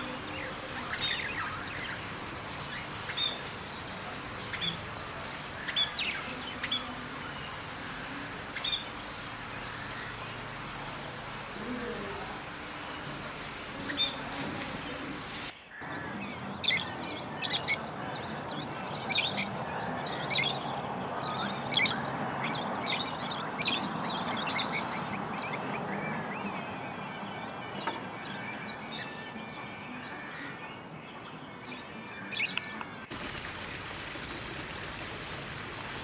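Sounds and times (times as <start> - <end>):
steady background hiss: 0.0 - 15.5
faint bird twittering: 0.0 - 20.6
small birds chirping: 0.0 - 29.2, 32.3 - 36.0.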